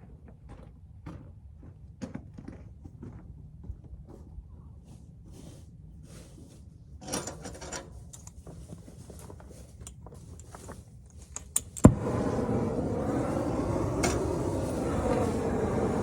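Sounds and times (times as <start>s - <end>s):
torch and hoses rattling: 7.0s - 16.0s
gas igniting with a pop: 11.7s - 16.0s
torch flame hissing: 11.8s - 16.0s.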